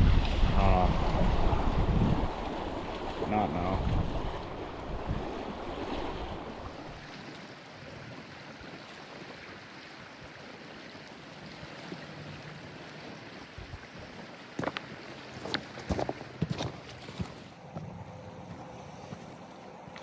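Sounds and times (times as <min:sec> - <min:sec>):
wind buffeting microphone: 0:00.0 - 0:07.0, 0:13.3 - 0:14.8
river water rushing: 0:01.0 - 0:17.6.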